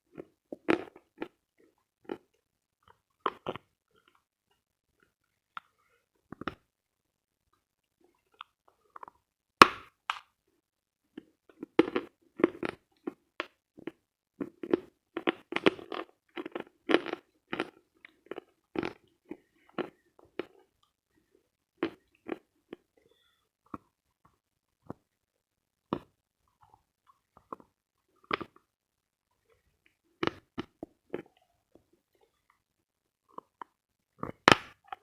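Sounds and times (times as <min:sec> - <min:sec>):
chalk being bitten and chewed: 0:11.5 - 0:20.7.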